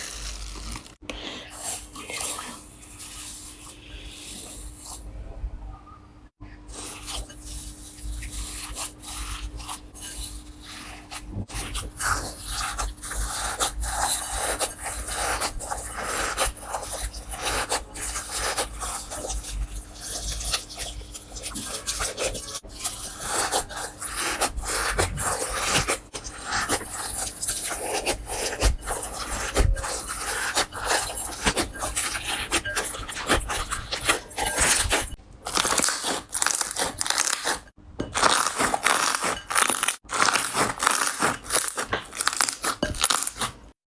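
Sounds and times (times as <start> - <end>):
slime crackling and popping: 0.0 - 1.0, 34.8 - 43.6.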